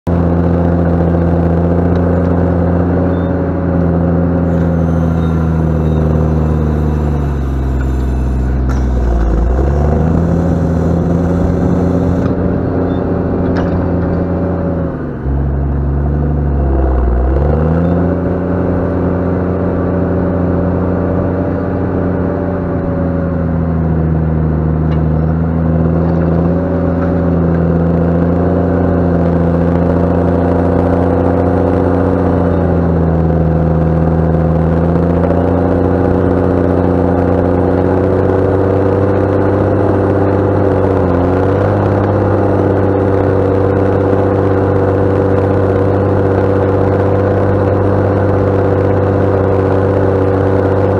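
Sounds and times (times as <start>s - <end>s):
tractor diesel engine under load: 0.1s - 50.9s.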